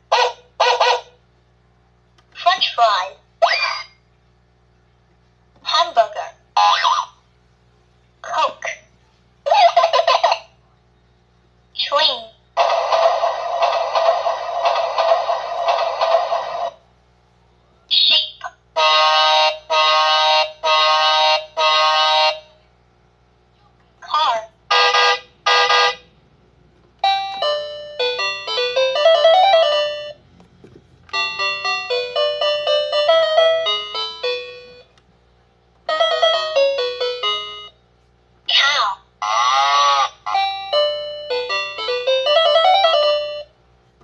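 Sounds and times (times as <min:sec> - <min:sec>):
tinny electronic toy tune: 0:18.8 - 0:22.5, 0:24.7 - 0:26.1, 0:27.0 - 0:30.2, 0:31.1 - 0:35.0, 0:35.9 - 0:37.8, 0:40.2 - 0:43.6.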